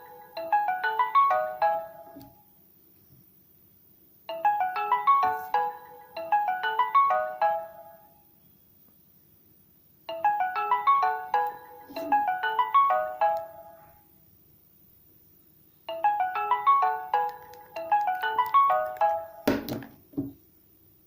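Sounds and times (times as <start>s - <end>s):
phone ringtone melody: 0.0s - 2.2s, 4.3s - 8.1s, 10.1s - 13.8s, 15.9s - 19.4s.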